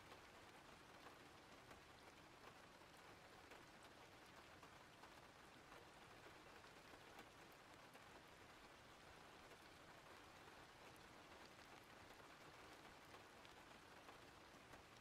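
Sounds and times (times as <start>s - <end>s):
rain drop ticks: 0.0s - 15.0s
rain patter: 0.0s - 15.0s.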